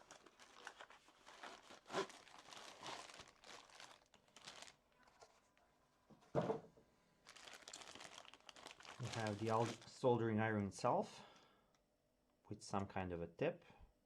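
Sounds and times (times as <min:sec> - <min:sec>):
packaging crinkling: 0:00.0 - 0:05.4, 0:07.2 - 0:10.0
knock on desk: 0:06.4 - 0:06.7.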